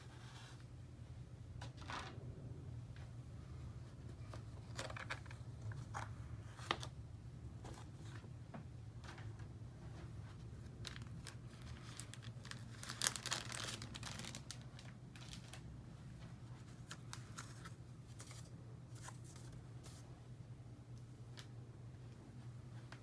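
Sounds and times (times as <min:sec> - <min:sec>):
low steady hum: 0:00.0 - 0:23.0
packaging crinkling and tearing: 0:10.8 - 0:15.7.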